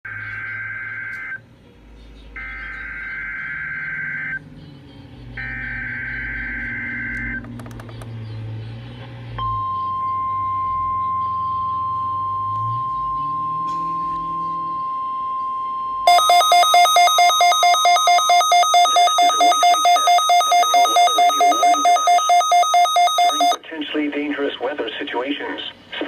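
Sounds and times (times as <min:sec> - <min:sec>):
clicks: 0:07.2 - 0:08.2, 0:16.1 - 0:23.6
screeching digital data bursts: 0:16.1 - 0:23.6
steady warning alarm tone: 0:16.1 - 0:23.6.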